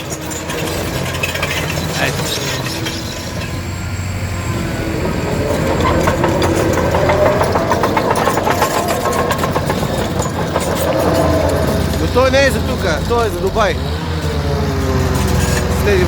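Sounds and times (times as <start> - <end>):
diesel engine revving: 0.0 - 16.0
sharp knocks and rattles: 0.0 - 16.0.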